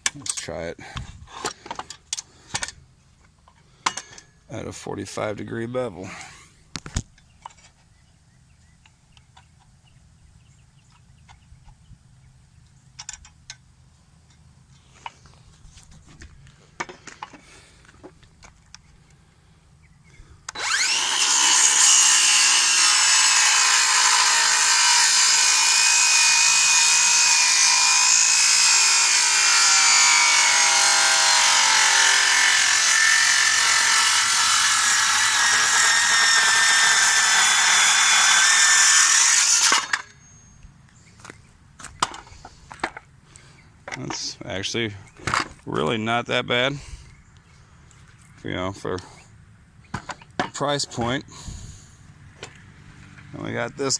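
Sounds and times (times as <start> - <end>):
circular saw cutting wood: 20.5 - 40.2.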